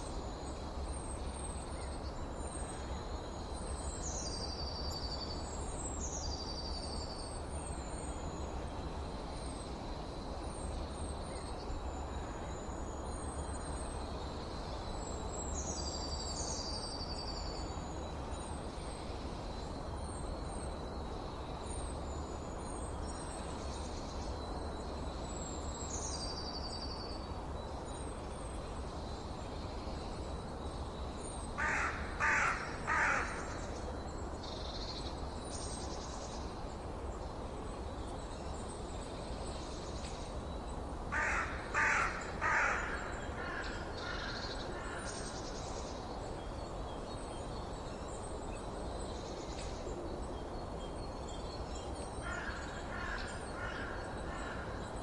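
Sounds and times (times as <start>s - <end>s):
songbirds trilling and chirping: 0.0s - 55.0s
large bird harsh calls: 41.1s - 45.2s.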